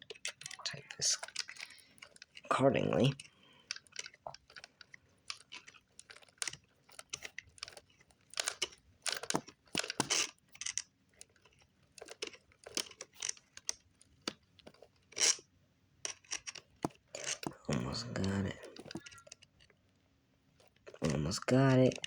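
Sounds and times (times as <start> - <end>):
plastic parts clicking and scraping: 0.0 - 19.8, 20.6 - 22.0
scratchy rubbing: 9.2 - 10.3.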